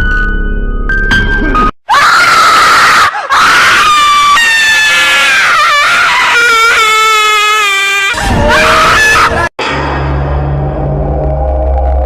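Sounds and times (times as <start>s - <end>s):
person screaming: 1.9s - 9.5s.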